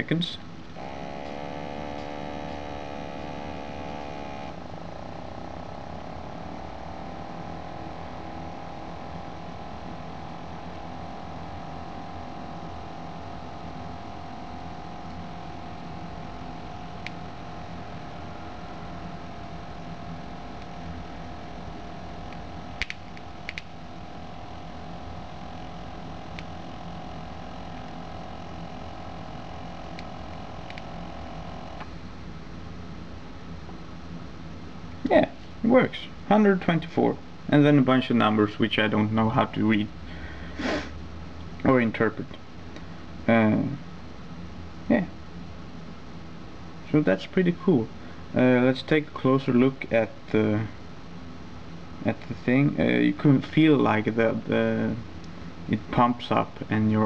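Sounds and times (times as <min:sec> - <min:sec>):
small air pump motor whine: 0:00.6 - 0:36.8, 0:40.0 - 0:41.4.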